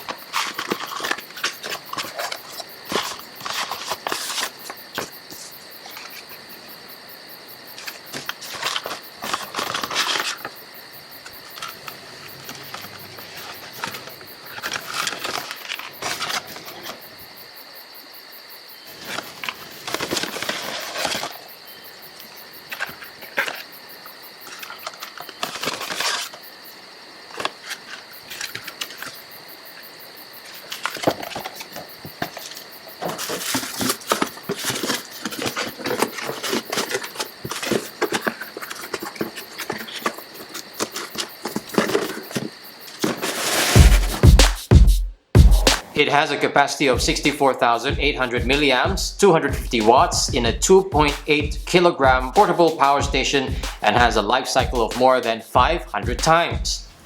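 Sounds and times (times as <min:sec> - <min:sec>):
packaging rustling and scraping: 0:00.0 - 0:05.2, 0:07.8 - 0:10.6, 0:11.5 - 0:17.1, 0:18.9 - 0:21.4, 0:24.5 - 0:26.4, 0:30.5 - 0:44.7.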